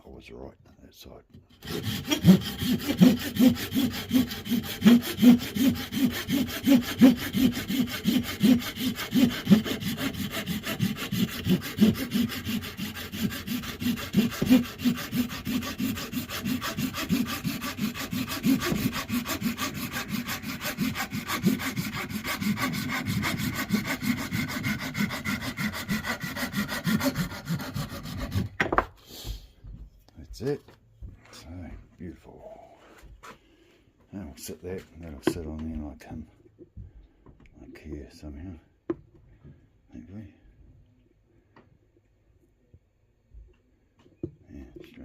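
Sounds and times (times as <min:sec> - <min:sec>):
hand saw cutting wood: 0:01.5 - 0:28.9, 0:34.4 - 0:35.8.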